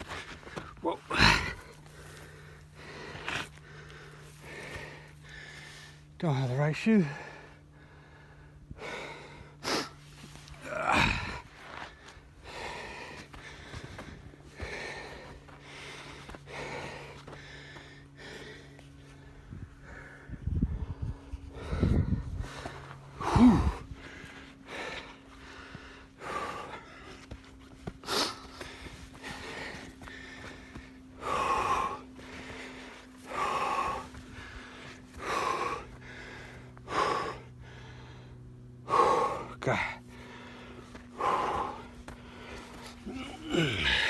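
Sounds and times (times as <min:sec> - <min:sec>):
person breathing hard: 0:00.0 - 0:06.3, 0:06.9 - 0:44.0
person grunting: 0:00.8 - 0:01.8, 0:10.6 - 0:11.5, 0:23.2 - 0:23.8, 0:38.9 - 0:40.0, 0:43.0 - 0:44.0.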